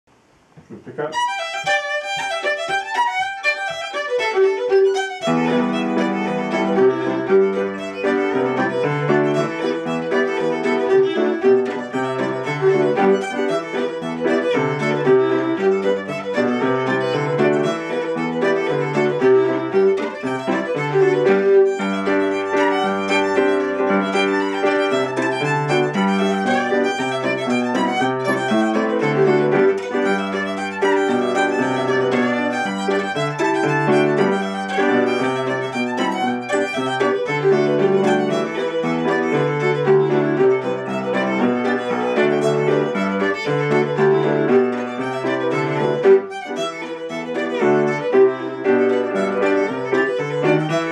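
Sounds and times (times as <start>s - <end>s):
accompanying instrument: 0.6s - 50.9s
fiddle playing a reel: 0.7s - 50.9s.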